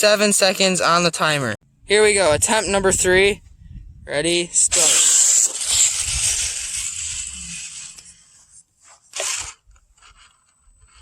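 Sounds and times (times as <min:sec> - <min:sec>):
toy crawler crunching over ground: 0:04.5 - 0:11.0.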